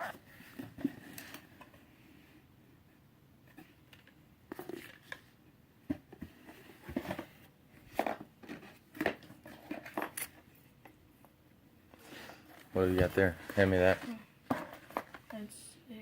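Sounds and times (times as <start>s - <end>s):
packaging rustling and crinkling: 12.6s - 15.3s.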